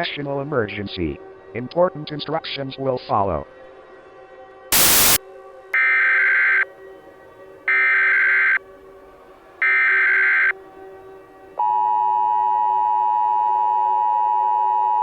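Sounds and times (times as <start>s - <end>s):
digital data tone bursts: 4.8s - 5.2s.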